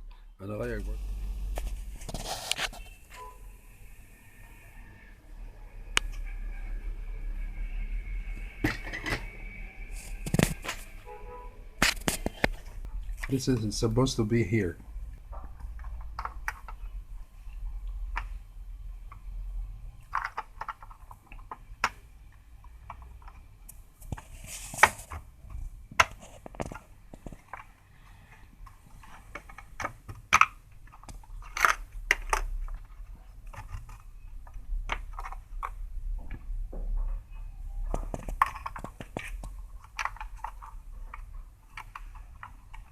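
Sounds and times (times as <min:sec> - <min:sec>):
small parts clicking and tapping: 0:20.0 - 0:24.2, 0:37.0 - 0:42.9.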